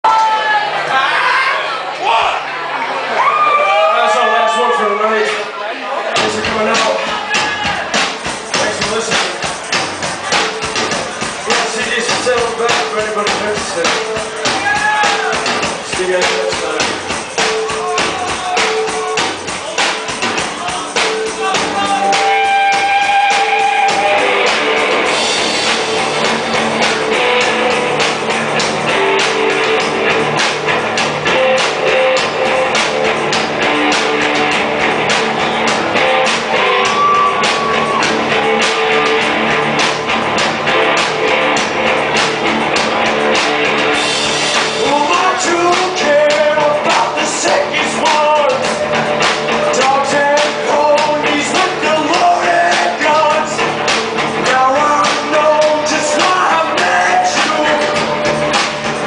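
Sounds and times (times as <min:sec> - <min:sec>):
drum kit: 0:05.3 - 0:59.0
person singing: 0:10.3 - 0:24.6, 0:44.7 - 0:53.6, 0:54.4 - 0:58.4
electric guitar: 0:20.2 - 0:59.0.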